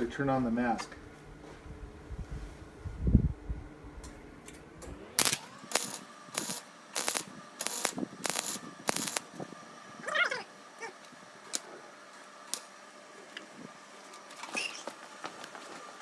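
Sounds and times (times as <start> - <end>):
welder arc bursts: 4.9 - 9.5, 11.0 - 12.8.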